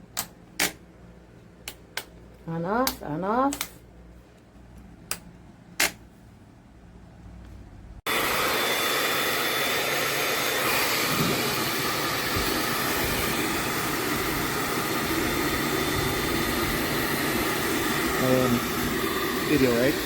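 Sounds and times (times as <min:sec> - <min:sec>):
hair dryer blowing: 0:08.1 - 0:20.0.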